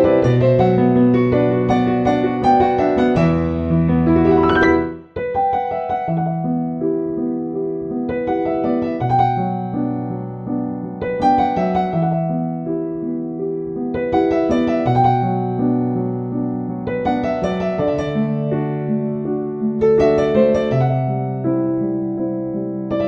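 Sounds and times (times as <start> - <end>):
calm piano music: 0.0 - 23.0.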